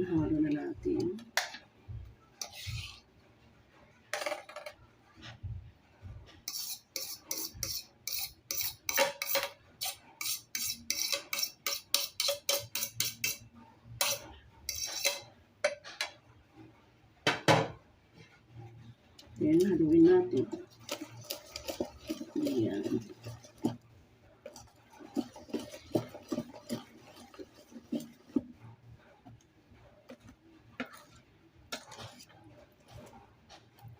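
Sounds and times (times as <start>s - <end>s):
spoon scraping a mixing bowl: 2.4s - 3.2s, 6.4s - 16.2s, 18.2s - 33.9s.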